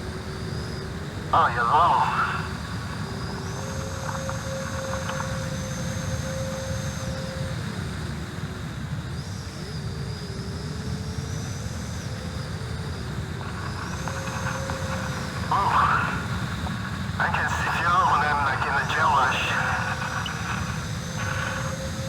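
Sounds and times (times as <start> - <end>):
model jet fan whine: 0.0 - 22.0
steady rushing rumble: 13.1 - 22.0.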